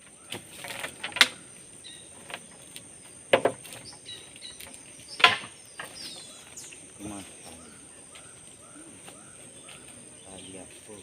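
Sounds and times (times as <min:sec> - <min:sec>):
sharp knocks: 0:03.3 - 0:03.7, 0:05.2 - 0:05.9.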